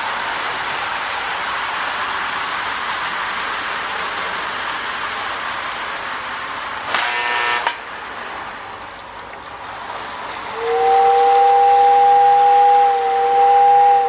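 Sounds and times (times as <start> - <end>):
buzzy horn blast: 6.9 - 7.8.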